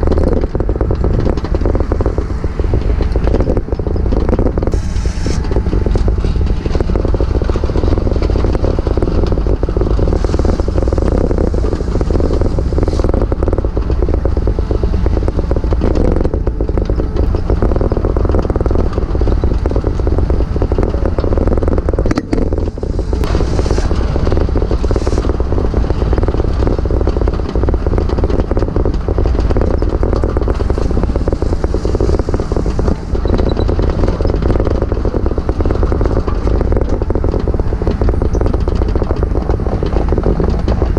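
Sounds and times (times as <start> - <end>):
heavy machine engine running: 0.0 - 40.9.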